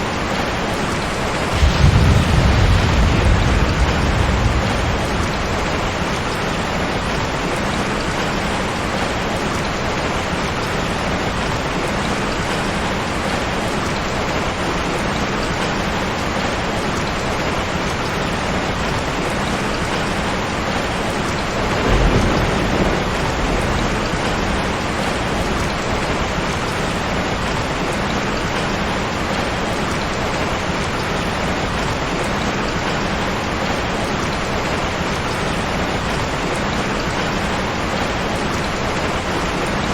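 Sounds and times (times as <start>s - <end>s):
heavy rain: 0.0s - 39.9s
low rumble of thunder: 1.0s - 9.6s, 19.5s - 28.6s.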